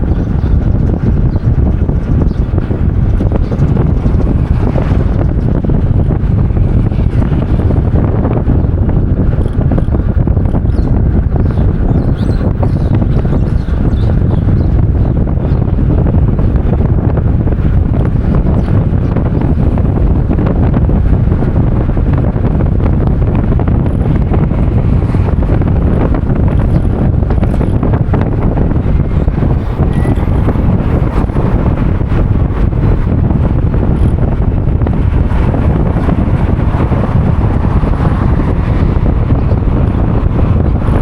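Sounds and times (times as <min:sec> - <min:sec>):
wind buffeting microphone: 0:00.0 - 0:41.0.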